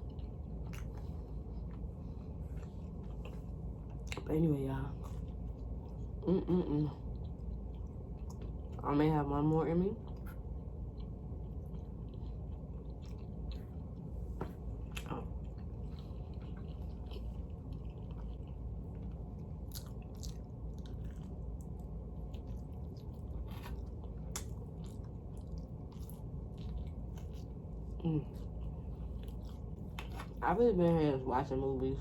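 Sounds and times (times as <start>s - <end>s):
chewing and biting pizza: 0.0s - 4.3s, 10.0s - 30.5s
steady low hum: 0.0s - 32.0s.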